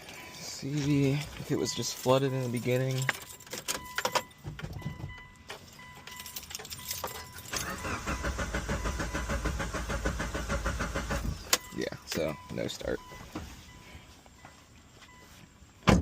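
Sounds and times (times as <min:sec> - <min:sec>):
car engine cranking without starting: 0:00.0 - 0:13.0
keys jingling and clicking: 0:00.7 - 0:07.9.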